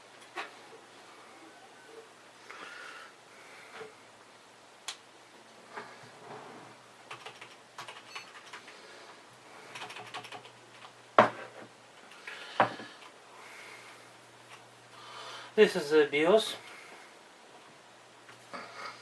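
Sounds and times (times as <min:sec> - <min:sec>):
keyboard keys clicking: 0:07.1 - 0:08.8, 0:09.7 - 0:11.0.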